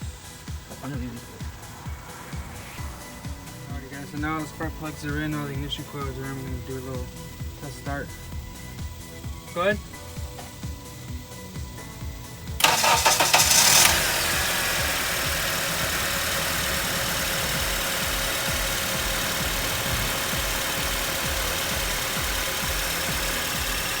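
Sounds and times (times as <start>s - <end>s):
car engine idling: 0.0s - 24.0s
starter cranking: 12.6s - 24.0s.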